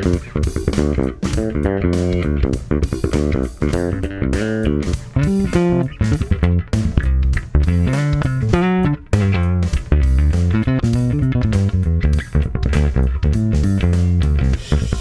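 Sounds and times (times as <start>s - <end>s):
plucked electric bass notes: 0.0s - 15.0s.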